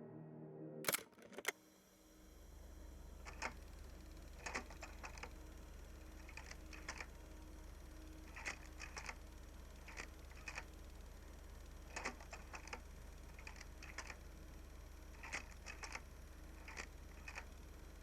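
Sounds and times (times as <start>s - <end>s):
low steady hum: 0.8s - 18.0s
light clicks like typing: 3.2s - 3.6s, 4.4s - 5.3s, 6.2s - 7.1s, 8.3s - 9.2s, 9.8s - 10.7s, 11.9s - 12.8s, 13.4s - 14.2s, 15.2s - 16.0s, 16.6s - 17.6s.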